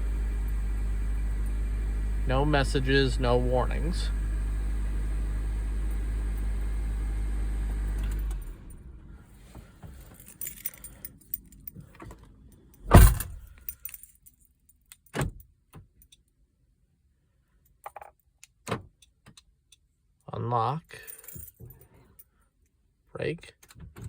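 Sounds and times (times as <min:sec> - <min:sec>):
car engine running: 0:00.0 - 0:10.1
keys rattling: 0:09.9 - 0:15.2, 0:21.0 - 0:22.2
car door shutting: 0:12.8 - 0:13.6.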